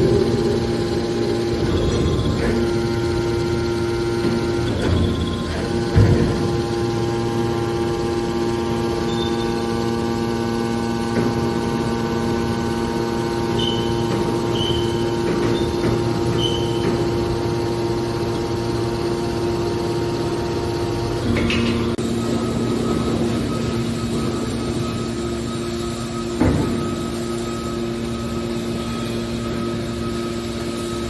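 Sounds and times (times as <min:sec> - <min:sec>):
machine knock: 0:00.0 - 0:07.2, 0:13.2 - 0:19.8, 0:26.3 - 0:27.3
hydraulic baler humming: 0:00.0 - 0:31.0
short high squeaks: 0:13.5 - 0:17.1.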